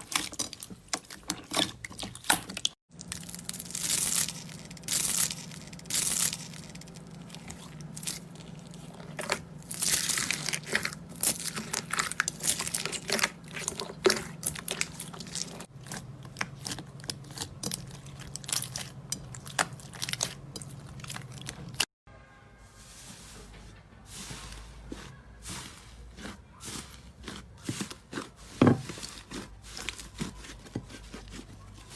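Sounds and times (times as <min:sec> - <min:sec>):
slime crackling and popping: 0:00.0 - 0:21.8.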